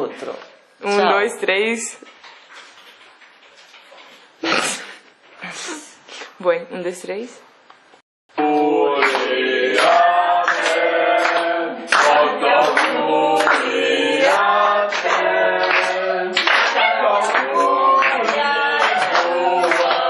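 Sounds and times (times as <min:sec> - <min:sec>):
group singing without accompaniment: 0:08.3 - 0:20.0
people clapping along: 0:08.4 - 0:20.0.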